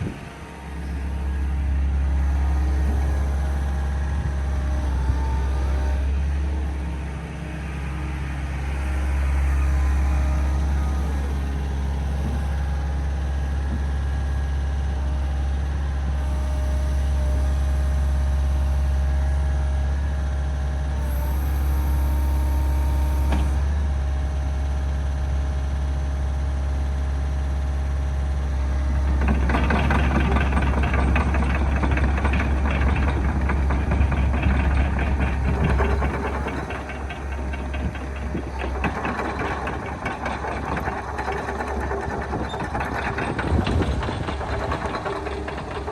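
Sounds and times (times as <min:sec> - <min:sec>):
excavator diesel engine humming: 0:00.0 - 0:45.9
rough fast rattling: 0:29.0 - 0:45.9.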